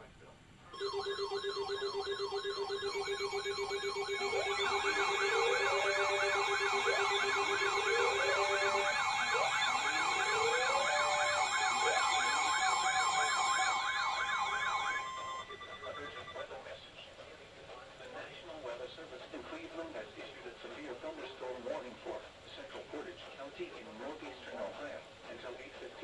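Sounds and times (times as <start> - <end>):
steady high alert tone: 0.7 - 16.6
warbling alarm tone: 0.8 - 16.5.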